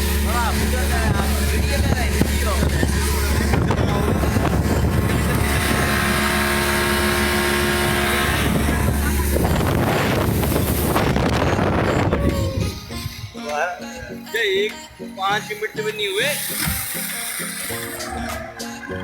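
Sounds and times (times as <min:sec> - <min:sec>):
motor vehicle rumble: 0:00.0 - 0:13.3
wind noise on microphone: 0:00.0 - 0:13.4.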